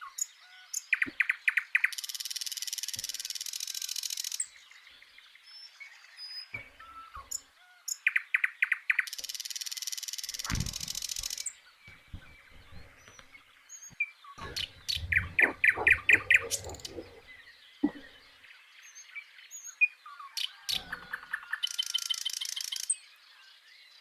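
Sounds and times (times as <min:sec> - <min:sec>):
small birds chirping: 0:00.0 - 0:24.0
low knocks: 0:10.5 - 0:11.0.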